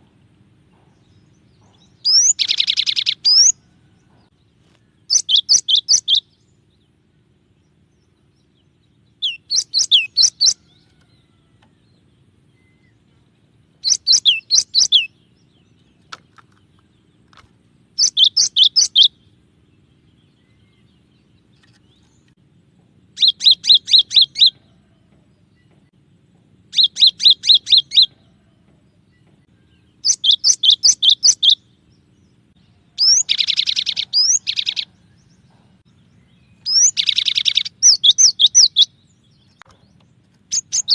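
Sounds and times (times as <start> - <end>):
bird singing high whistled notes: 2.0 - 3.6, 5.1 - 6.5, 9.1 - 10.7, 13.8 - 15.2, 18.0 - 19.2, 23.2 - 24.6, 26.7 - 28.2, 29.7 - 31.7, 32.9 - 35.2, 36.2 - 39.6, 40.5 - 40.9.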